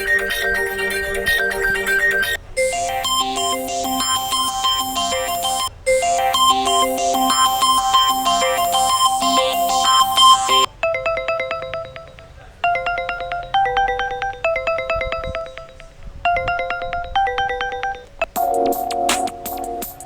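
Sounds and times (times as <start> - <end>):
dense electronic tune: 0.0 - 10.7
bright melodic ringtone: 0.0 - 20.0
electronic ringtone with a beat: 0.0 - 20.0.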